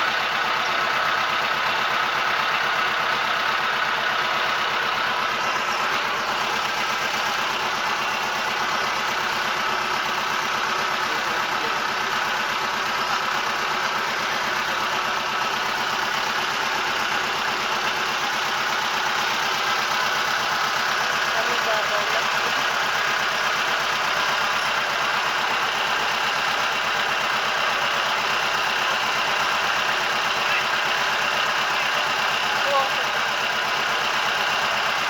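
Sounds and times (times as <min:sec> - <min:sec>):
boat engine running: 0:00.0 - 0:35.0.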